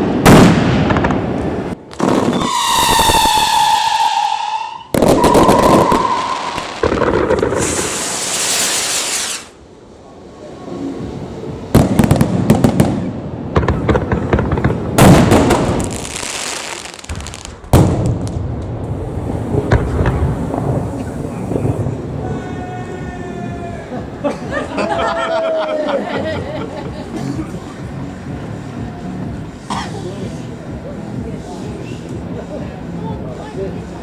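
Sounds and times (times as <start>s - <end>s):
firework bangs and crackling: 0.0s - 9.6s, 10.7s - 24.2s
hissing rush: 1.6s - 11.7s, 18.8s - 24.3s
firework whistle: 2.0s - 9.6s.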